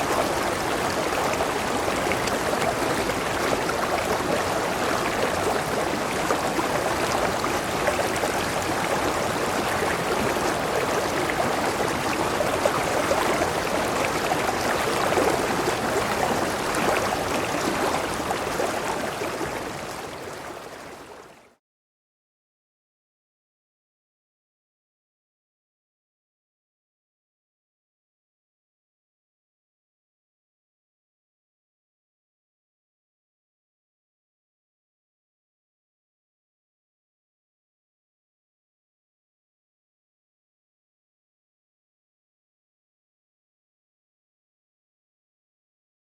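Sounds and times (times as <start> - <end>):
running water: 0.0 - 21.6.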